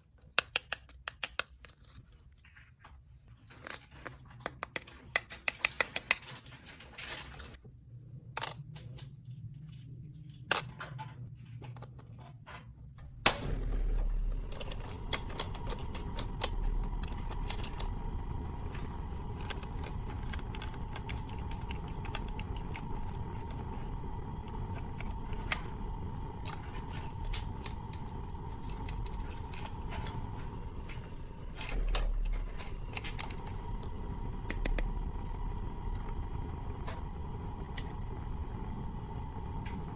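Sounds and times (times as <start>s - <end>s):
plastic pieces clicking and rattling: 3.4s - 7.6s, 14.4s - 33.6s.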